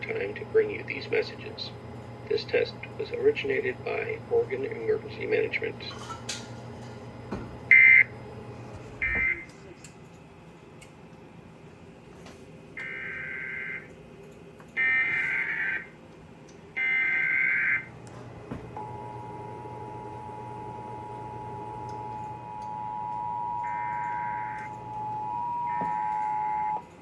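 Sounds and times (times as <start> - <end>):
two-tone attention signal: 9.0 - 9.5, 18.8 - 26.8
warbling digital data bursts: 22.8 - 26.8.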